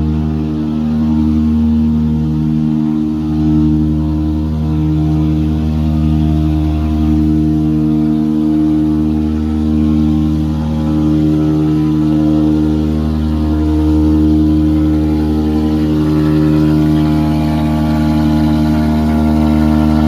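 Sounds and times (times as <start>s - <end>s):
vacuum truck engine hum: 0.0s - 20.0s.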